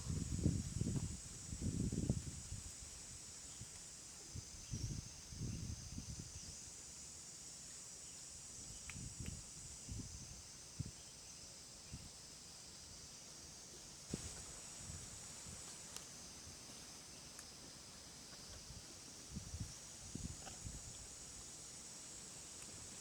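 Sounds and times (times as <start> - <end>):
high-pitched insect chorus: 0.0 - 23.0.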